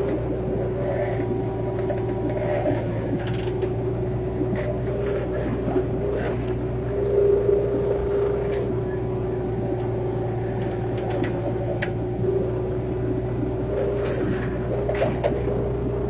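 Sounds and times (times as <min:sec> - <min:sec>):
excavator engine droning: 0:00.0 - 0:16.0
sharp clicks and knocks: 0:01.2 - 0:03.9, 0:06.4 - 0:06.6, 0:10.5 - 0:12.1.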